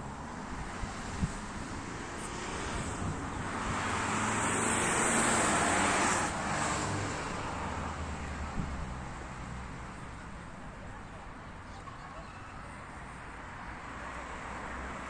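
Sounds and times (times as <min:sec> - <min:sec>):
car passing by: 0:00.0 - 0:10.4
outdoor background noise: 0:00.0 - 0:15.0.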